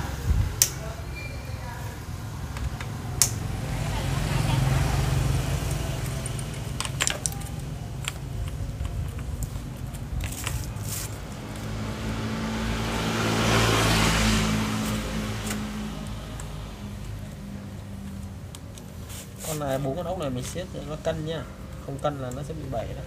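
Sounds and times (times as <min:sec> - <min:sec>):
low engine hum: 0:00.0 - 0:19.0
metal clinks and rattles: 0:05.8 - 0:10.9.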